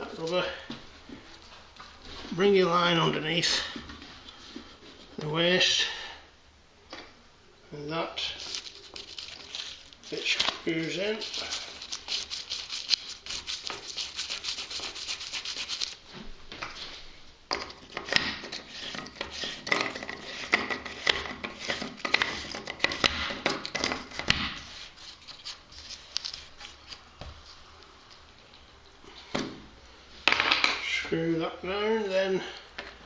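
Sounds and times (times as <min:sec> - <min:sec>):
plastic parts rubbing and clicking: 0:08.4 - 0:16.0, 0:17.6 - 0:27.1.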